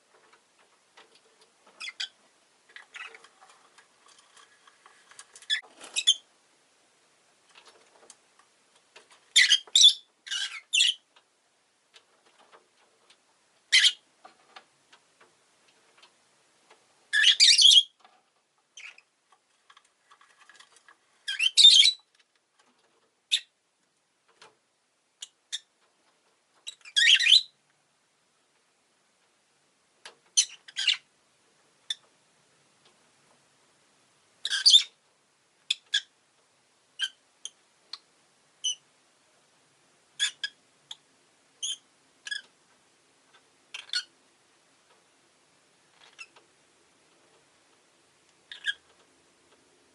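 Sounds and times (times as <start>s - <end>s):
lovebird squawking chirps: 5.5s - 6.2s, 9.4s - 11.0s, 13.7s - 14.0s, 17.1s - 18.0s, 21.3s - 22.0s, 26.7s - 27.5s, 34.4s - 35.0s, 48.5s - 48.8s.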